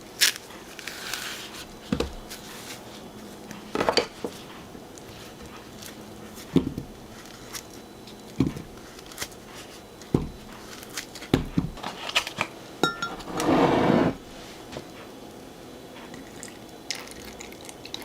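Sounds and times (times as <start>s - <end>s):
kitchen utensils knocking: 12.8s - 13.3s
ringing dish clink: 12.8s - 13.3s.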